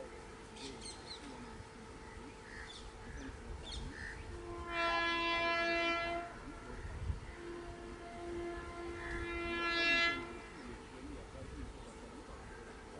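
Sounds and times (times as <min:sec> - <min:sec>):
birds chirping: 0:00.0 - 0:04.6, 0:10.2 - 0:12.9
low rumble of train: 0:00.0 - 0:12.9
train horn blast: 0:04.0 - 0:11.2.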